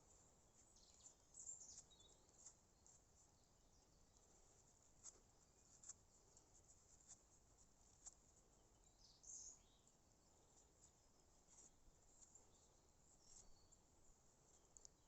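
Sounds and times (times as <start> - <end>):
soft ticks: 14.5 - 15.0.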